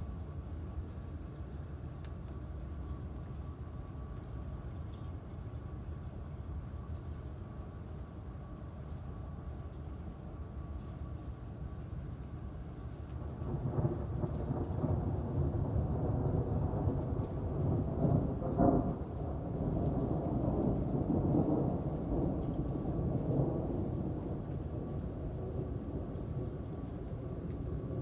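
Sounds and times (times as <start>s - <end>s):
steady rain: 0.0s - 28.0s
rolling thunder: 13.2s - 28.0s.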